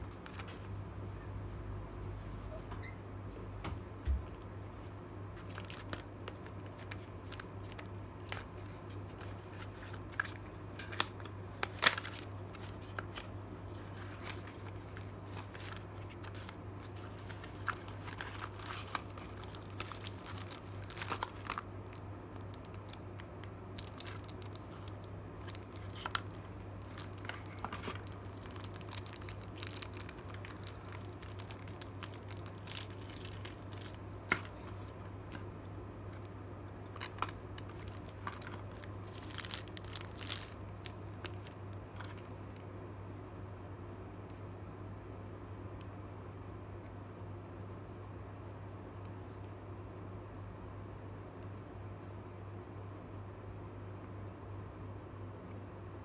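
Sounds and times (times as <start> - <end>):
steady low hum: 0.0 - 56.0
plastic crinkling and tearing: 5.4 - 42.6.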